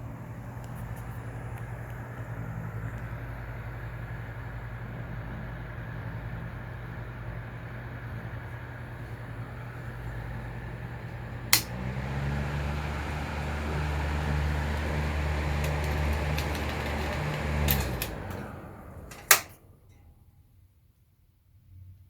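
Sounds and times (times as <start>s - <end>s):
exhaust fan motor humming: 0.0s - 20.2s
sharp switch click: 11.5s - 11.8s.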